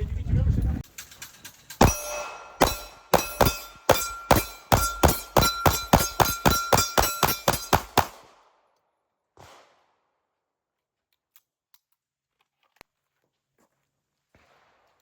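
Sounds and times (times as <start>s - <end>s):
faint ringing: 0.9s - 8.1s
pistol shots: 1.8s - 8.4s.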